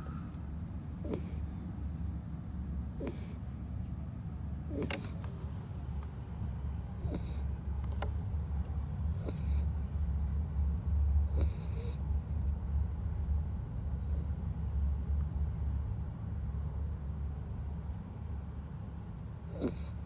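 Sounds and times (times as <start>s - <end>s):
puppy snoring: 0.9s - 1.6s, 2.8s - 3.5s, 4.6s - 5.9s, 6.9s - 9.8s, 11.2s - 12.0s, 19.4s - 20.0s.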